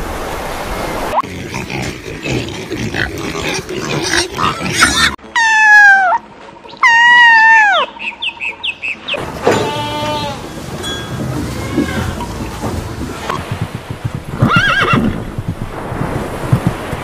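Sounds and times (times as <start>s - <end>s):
pig grunting: 1.2s - 5.2s
pig squealing: 1.2s - 6.2s, 6.8s - 7.9s
rough background noise: 8.0s - 17.0s.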